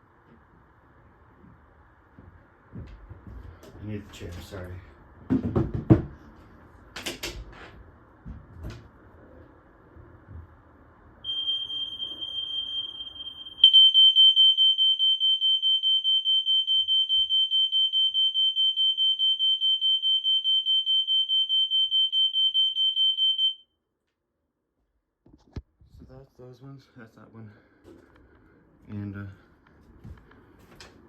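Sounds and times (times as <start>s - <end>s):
smoke alarm beeping: 11.2s - 23.7s.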